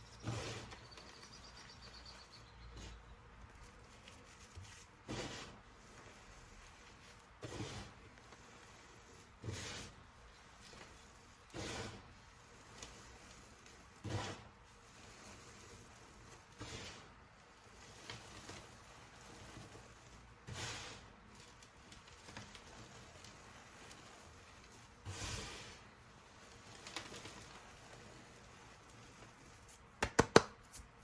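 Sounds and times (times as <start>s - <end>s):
powder being crushed by hand: 21.2s - 25.0s, 26.1s - 31.0s.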